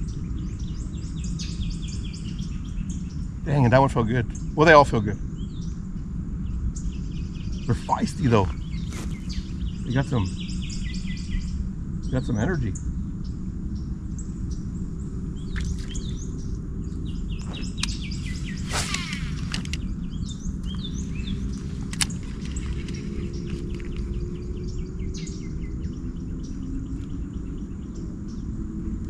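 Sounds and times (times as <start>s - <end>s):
birds chirping and singing: 0.0s - 29.0s
low rumble: 0.0s - 29.0s
sharp clicks: 18.7s - 19.9s, 21.8s - 24.1s.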